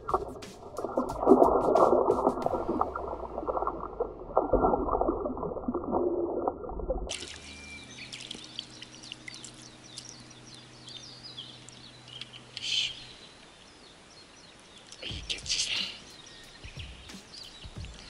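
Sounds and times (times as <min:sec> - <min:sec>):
water dripping and trickling: 0:00.0 - 0:11.0
muffled water splashing: 0:00.0 - 0:12.6
small birds chirping: 0:07.1 - 0:18.0.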